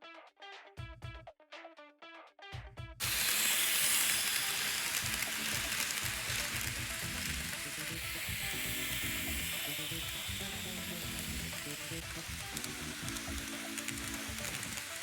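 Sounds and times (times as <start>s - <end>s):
background music: 0.0s - 15.0s
model train running on track: 3.0s - 15.0s.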